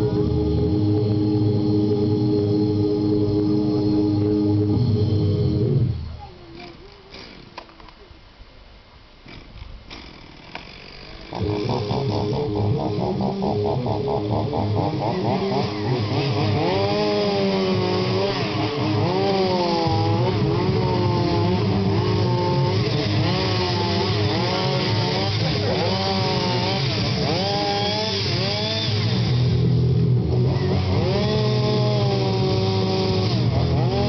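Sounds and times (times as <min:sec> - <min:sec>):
chainsaw revving: 0:09.2 - 0:34.0.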